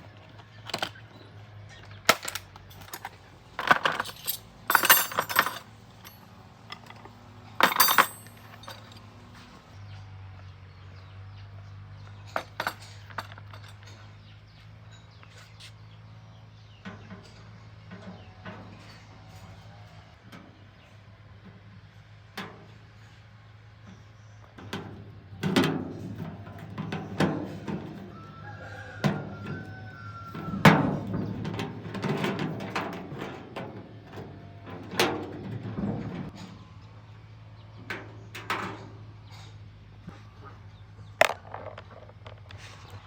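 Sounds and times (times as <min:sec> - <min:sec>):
knocks and clanks of tools: 0:01.8 - 0:09.0, 0:12.2 - 0:14.1, 0:24.6 - 0:36.7, 0:41.2 - 0:43.0.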